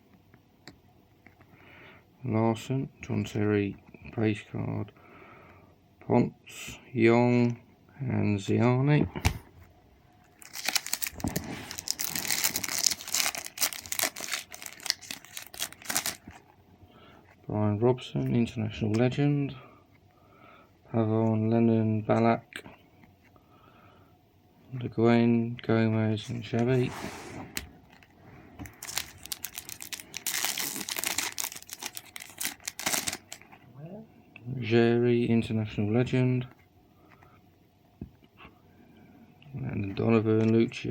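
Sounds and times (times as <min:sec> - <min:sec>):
foil wrapper tearing and crumpling: 0:10.4 - 0:16.2, 0:28.7 - 0:33.4.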